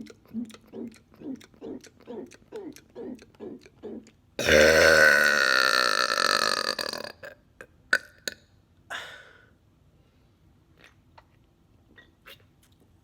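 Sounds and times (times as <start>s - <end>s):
man burping: 0.0s - 8.4s.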